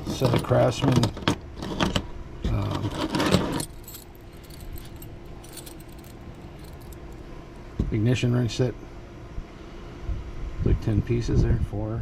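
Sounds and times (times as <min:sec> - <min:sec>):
wrenches jingling and clinking: 0:00.0 - 0:01.8, 0:02.7 - 0:07.2.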